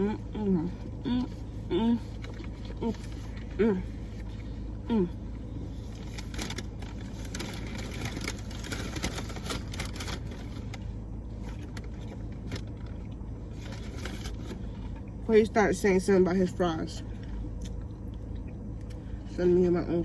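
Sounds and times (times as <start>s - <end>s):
person humming mm: 0.0s - 2.1s
low hum: 0.0s - 20.0s
food wrappers rustling: 5.7s - 14.7s.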